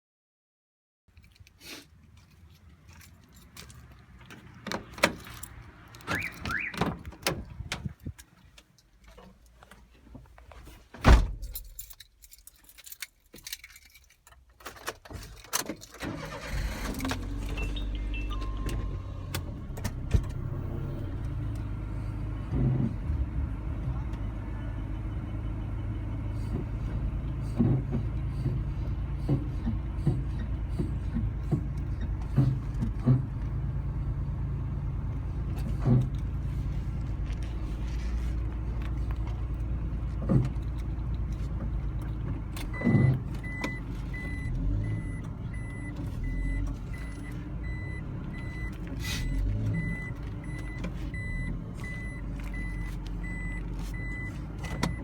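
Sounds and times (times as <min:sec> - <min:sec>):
truck engine running: 0:16.1 - 0:55.0
high electronic beep: 0:17.6 - 0:18.8.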